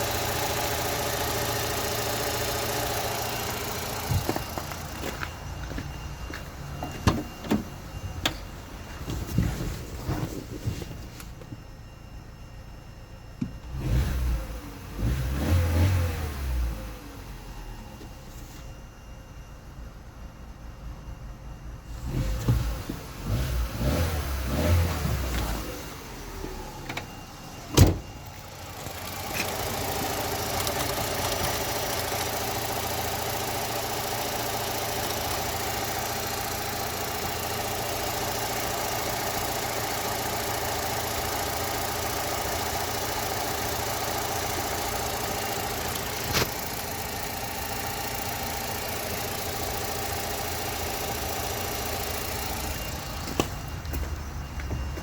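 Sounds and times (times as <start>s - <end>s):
car engine starting and idling: 0.0s - 55.0s.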